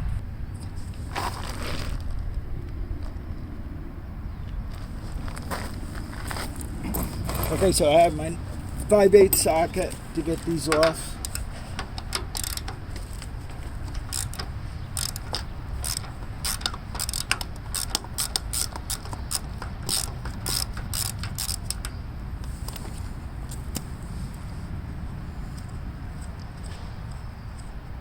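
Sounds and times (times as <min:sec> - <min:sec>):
ratchet wrench clicking: 0:10.6 - 0:22.0.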